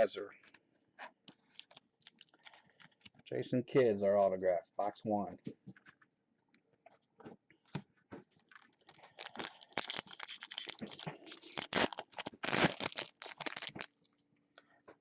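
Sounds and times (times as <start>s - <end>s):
plastic wrapper crinkling and tearing: 1.3s - 3.2s, 8.4s - 14.2s.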